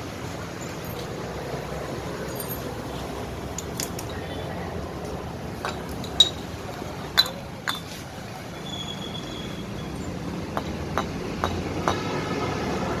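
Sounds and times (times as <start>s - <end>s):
steady background hum: 0.0s - 8.6s
metallic clinks of tools: 0.6s - 1.2s, 2.2s - 2.9s, 5.6s - 8.0s.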